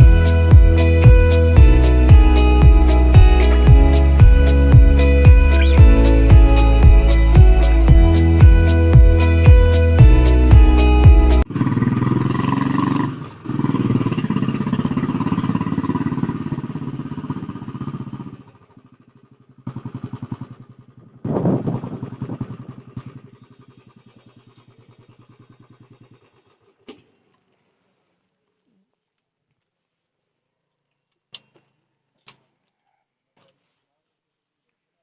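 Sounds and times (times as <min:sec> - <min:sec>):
motorcycle engine running: 0:00.0 - 0:27.3
motorcycle throttle bursts: 0:00.0 - 0:27.3.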